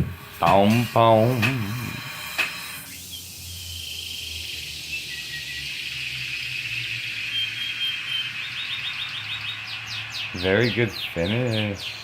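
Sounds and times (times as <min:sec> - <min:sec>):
canary singing: 0:02.8 - 0:12.0.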